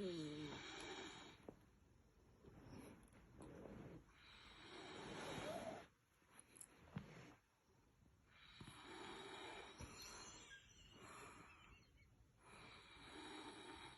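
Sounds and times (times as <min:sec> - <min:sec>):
faint snoring: 0:00.0 - 0:01.4, 0:03.9 - 0:05.9, 0:08.3 - 0:10.0, 0:12.4 - 0:13.9.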